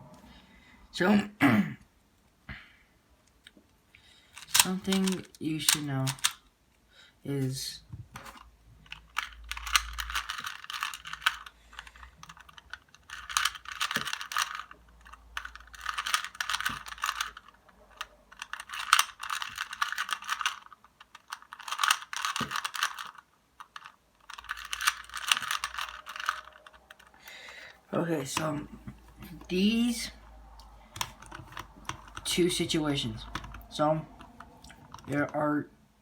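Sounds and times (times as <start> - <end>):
puzzle cube pieces clicking: 4.4 - 6.4, 8.2 - 27.4, 28.3 - 35.4.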